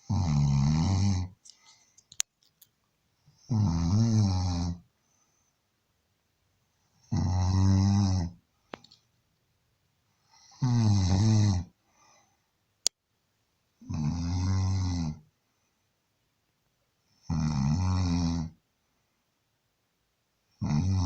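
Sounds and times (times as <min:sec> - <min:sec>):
man snoring: 0:00.0 - 0:01.4, 0:03.5 - 0:04.8, 0:07.1 - 0:08.4, 0:10.4 - 0:11.7, 0:13.8 - 0:15.2, 0:17.3 - 0:18.6, 0:20.6 - 0:21.0.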